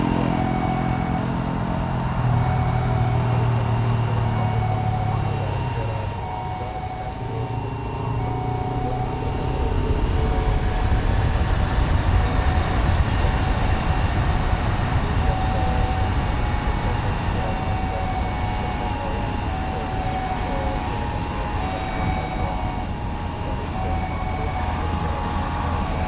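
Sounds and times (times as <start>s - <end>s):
jet engines running: 0.0s - 26.0s.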